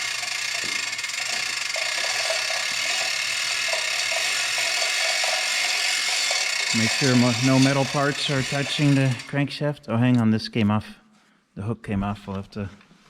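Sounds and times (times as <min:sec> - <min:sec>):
hoist ratcheting clatter: 0:00.0 - 0:09.4.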